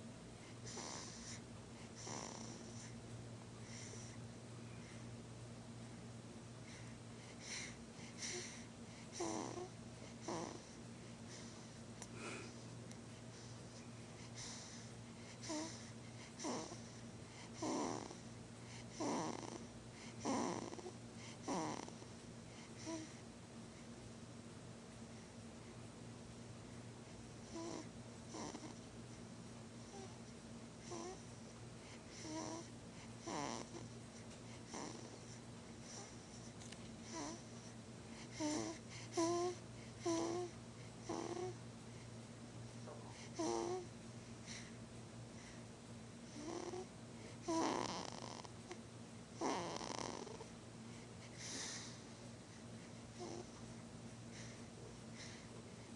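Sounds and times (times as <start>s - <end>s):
snoring breaths: 0.4s - 3.0s, 6.6s - 12.6s, 13.2s - 23.2s, 27.4s - 28.8s, 30.8s - 41.6s, 42.8s - 44.8s, 45.4s - 48.8s, 49.4s - 55.9s.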